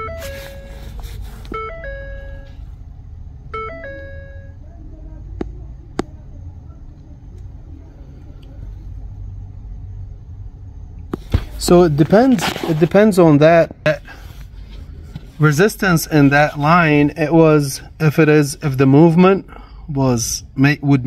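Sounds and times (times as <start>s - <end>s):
electronic chimes: 0.0s - 0.7s.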